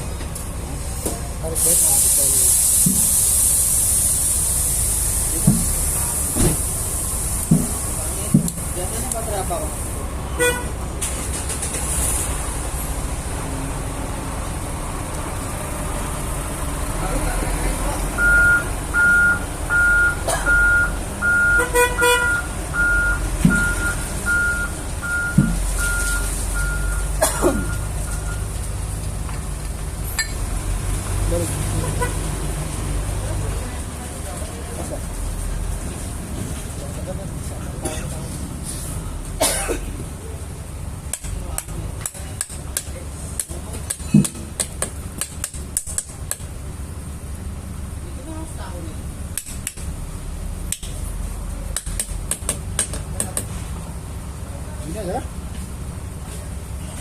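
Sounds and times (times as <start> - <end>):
engine rumbling: 0.0 - 57.0
horn toot: 10.3 - 10.8, 21.5 - 22.5, 31.8 - 32.3
reversing alarm beeping: 18.2 - 28.5.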